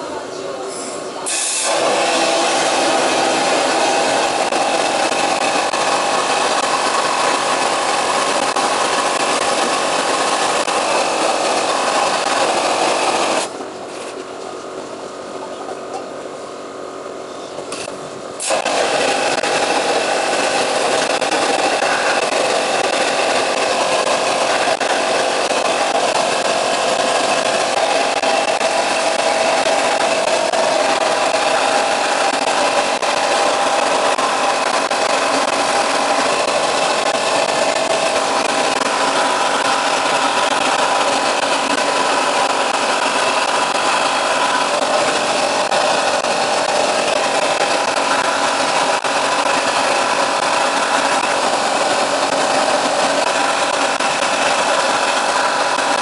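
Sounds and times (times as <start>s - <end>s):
quieter running hiss: 0.3s - 15.6s, 16.3s - 56.0s
blasting gun spraying hiss: 1.2s - 13.5s, 18.4s - 56.0s.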